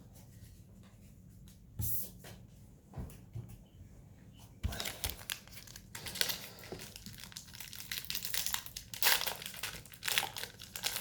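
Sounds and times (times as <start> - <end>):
wrapper tearing and crinkling: 4.7 - 11.0.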